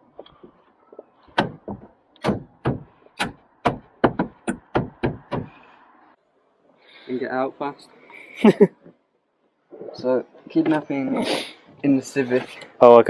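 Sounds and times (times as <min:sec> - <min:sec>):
sharp knocks: 0:00.2 - 0:05.6.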